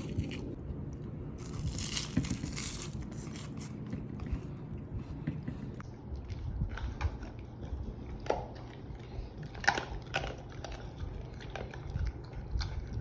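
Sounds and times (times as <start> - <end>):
person chewing crunchy chicken: 0.0 - 0.6, 1.4 - 4.6.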